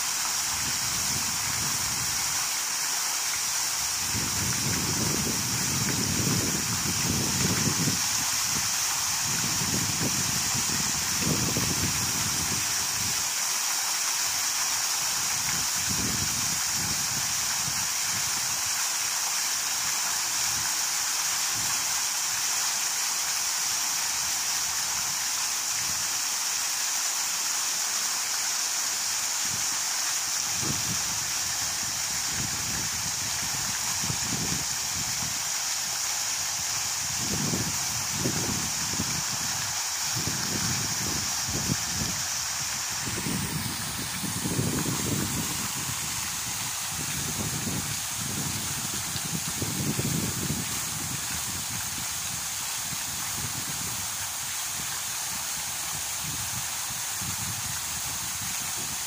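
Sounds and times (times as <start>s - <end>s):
waterfall rushing and splashing: 0.0s - 59.0s
wind buffeting microphone: 4.0s - 13.1s, 30.6s - 35.4s, 36.8s - 52.3s.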